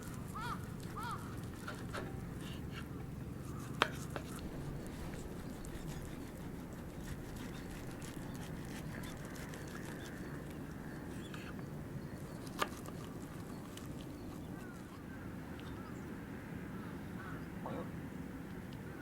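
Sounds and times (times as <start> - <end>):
low steady rumble: 0.0 - 17.3
campfire crackling: 4.0 - 10.9.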